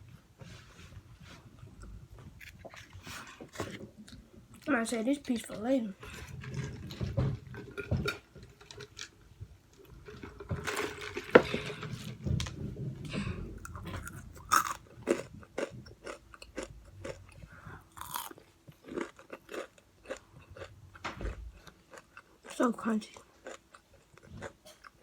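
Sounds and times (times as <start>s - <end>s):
chewing crispy fried chicken: 13.6s - 25.0s.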